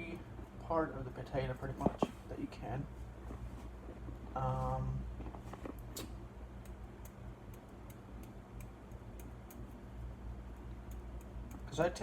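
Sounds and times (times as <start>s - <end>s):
low electrical hum: 0.0s - 12.0s
fork poking raw potato: 6.0s - 11.8s.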